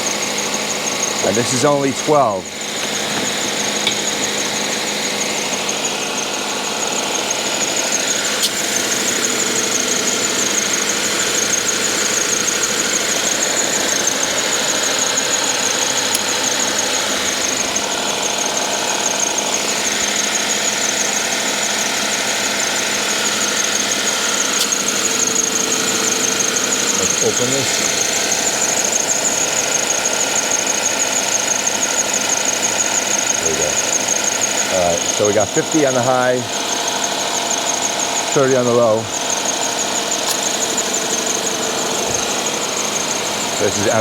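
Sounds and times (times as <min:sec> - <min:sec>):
car engine running: 0:00.0 - 0:44.0
high-pitched compressor whine: 0:00.0 - 0:44.0.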